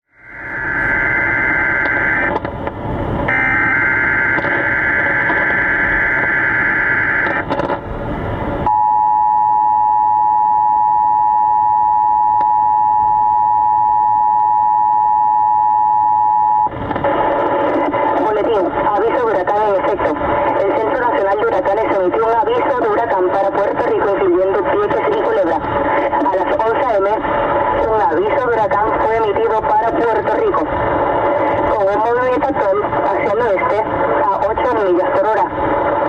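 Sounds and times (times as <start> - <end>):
two-tone attention signal: 3.3 - 7.2.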